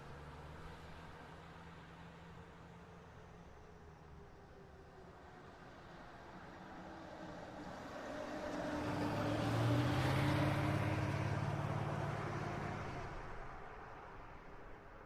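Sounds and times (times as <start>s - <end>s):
car passing slowly: 0.0s - 15.0s.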